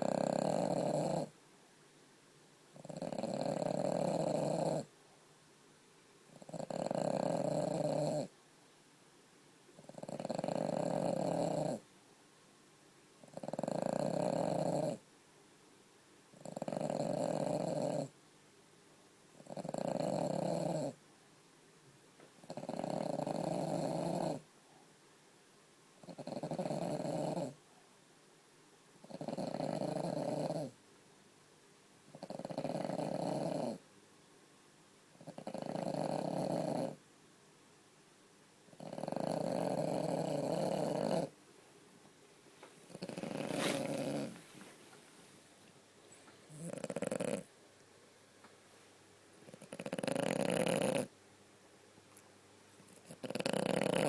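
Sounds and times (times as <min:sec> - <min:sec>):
dog snoring: 0:00.0 - 0:01.4, 0:02.7 - 0:04.9, 0:06.3 - 0:08.3, 0:09.8 - 0:11.8, 0:13.2 - 0:15.0, 0:16.3 - 0:18.2, 0:19.4 - 0:21.0, 0:22.4 - 0:24.5, 0:26.0 - 0:27.6, 0:29.0 - 0:30.8, 0:32.1 - 0:33.8, 0:35.1 - 0:37.0, 0:38.7 - 0:41.4, 0:42.9 - 0:44.8, 0:46.4 - 0:47.5, 0:49.5 - 0:51.1, 0:52.9 - 0:54.0.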